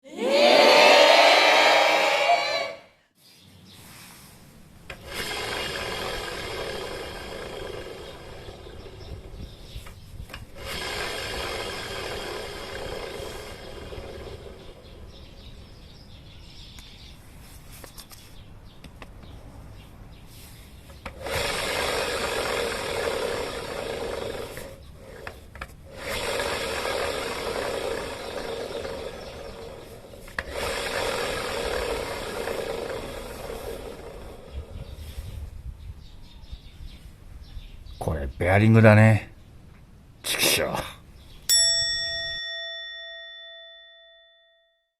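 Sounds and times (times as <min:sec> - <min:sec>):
scooter rasping grinding noise: 0:04.8 - 0:16.2, 0:20.4 - 0:35.5.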